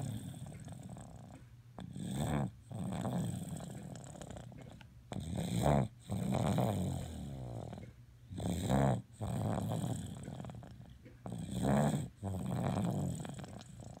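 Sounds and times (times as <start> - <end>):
rhythmic snoring: 0.0 - 14.0.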